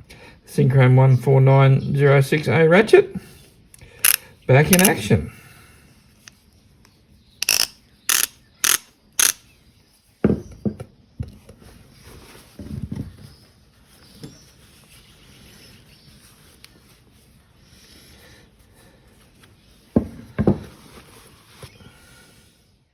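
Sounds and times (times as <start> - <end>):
ratchet handle clicking: 4.0 - 5.0, 7.4 - 9.4.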